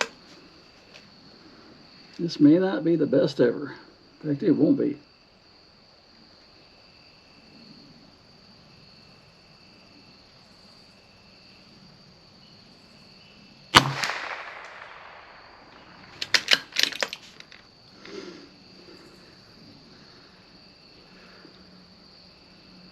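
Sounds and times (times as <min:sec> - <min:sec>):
crickets chirping: 0:00.0 - 0:22.9
rifle shot: 0:13.7 - 0:17.1
rifle bolt metallic clicks: 0:13.8 - 0:17.6.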